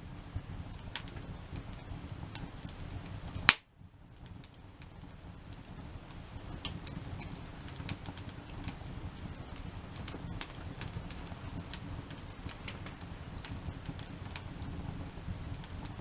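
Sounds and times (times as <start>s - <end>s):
campfire crackling: 0.0s - 16.0s
loud sharp pop: 3.5s - 3.7s.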